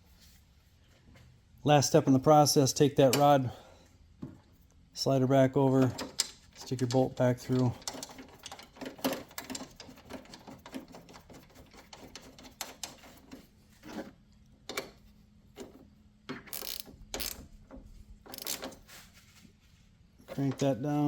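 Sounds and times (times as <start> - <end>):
metal clicks and knocks: 5.7 - 13.3
hand ratchet clicking: 5.8 - 13.1, 16.4 - 17.5, 18.3 - 18.8.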